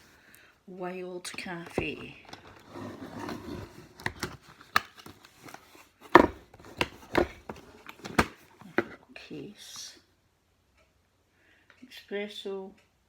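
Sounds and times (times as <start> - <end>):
sharp clicks and knocks of case: 6.0 - 9.0.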